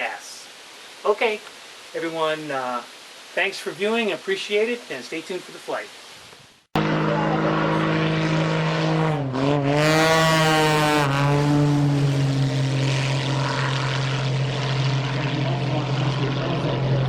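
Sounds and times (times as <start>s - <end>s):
model airplane propeller flying past: 6.8s - 17.0s.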